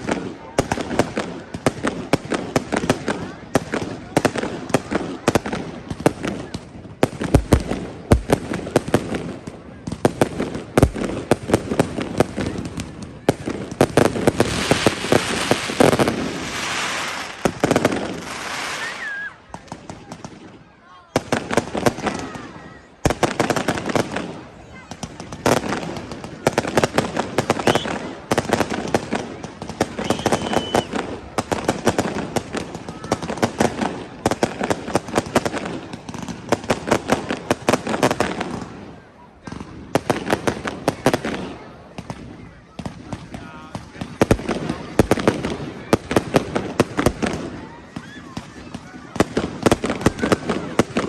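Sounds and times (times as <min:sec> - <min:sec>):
fireworks crackling hiss: 0:00.0 - 0:20.6, 0:21.2 - 0:51.0
fireworks bangs: 0:00.0 - 0:51.0.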